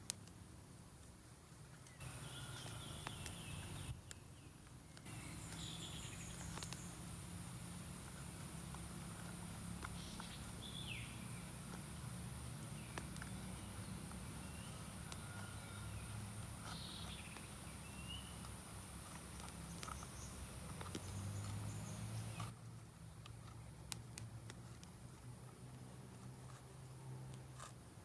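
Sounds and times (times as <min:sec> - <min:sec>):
short bird calls: 0:02.0 - 0:03.9
high insect drone: 0:05.1 - 0:22.5.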